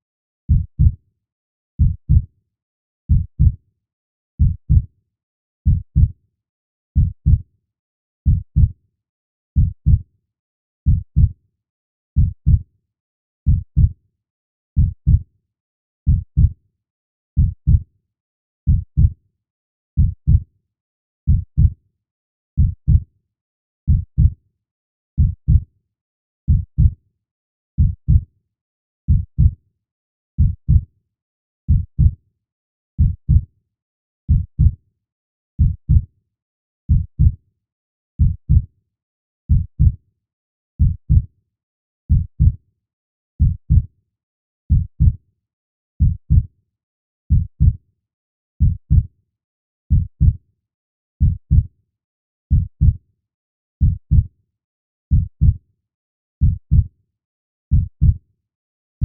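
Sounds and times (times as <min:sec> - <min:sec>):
slow heartbeat thumps: 0:56.4 - 0:56.8.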